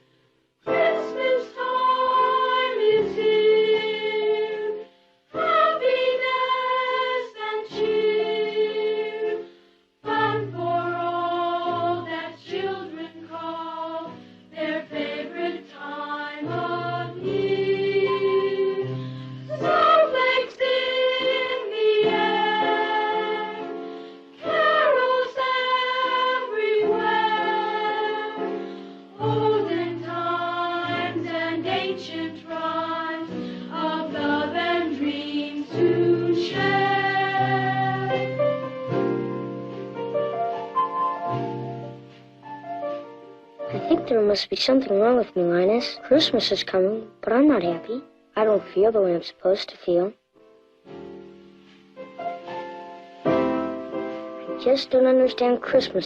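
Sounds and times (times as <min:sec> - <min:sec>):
choir singing: 0:00.7 - 0:39.0.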